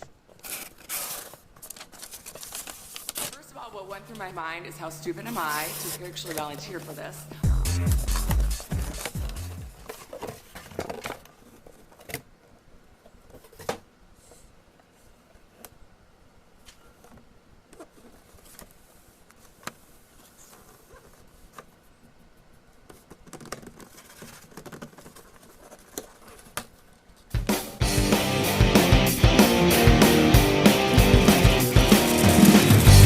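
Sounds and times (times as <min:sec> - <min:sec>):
paper rustling: 0:00.3 - 0:03.4, 0:05.2 - 0:07.3, 0:08.1 - 0:12.2, 0:22.9 - 0:27.3.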